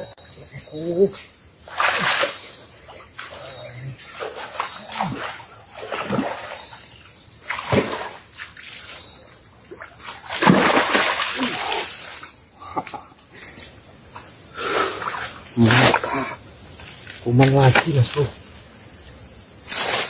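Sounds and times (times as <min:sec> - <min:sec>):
fish splashing in water: 0:01.7 - 0:02.5, 0:04.1 - 0:06.7, 0:07.4 - 0:09.0, 0:09.7 - 0:12.2.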